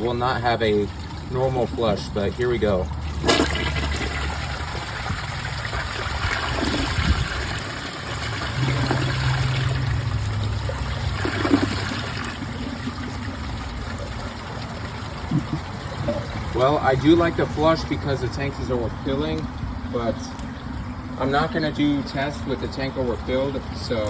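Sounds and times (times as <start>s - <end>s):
toilet flushing: 0.0s - 24.0s
toilet tank refilling: 0.0s - 24.0s.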